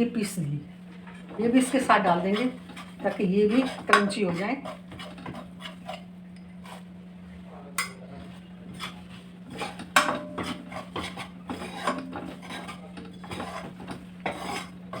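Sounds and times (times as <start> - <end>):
steady low hum: 0.0 - 15.0
metal ladle scraping a pan: 1.1 - 6.9, 7.8 - 15.0
metal clank on pan: 7.8 - 8.0, 9.7 - 11.1.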